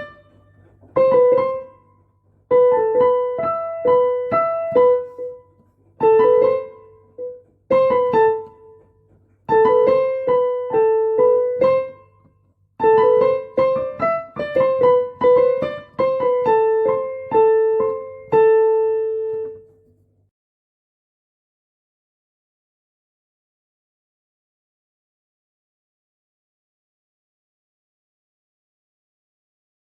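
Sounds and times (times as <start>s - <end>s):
simple piano melody: 0.0s - 20.0s.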